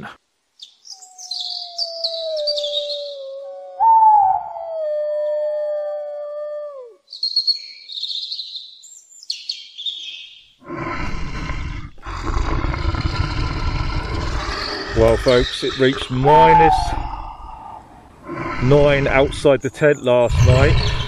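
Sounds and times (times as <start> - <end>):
high chirps: 0.6 - 3.2
canine howling: 1.6 - 7.0, 13.9 - 19.3.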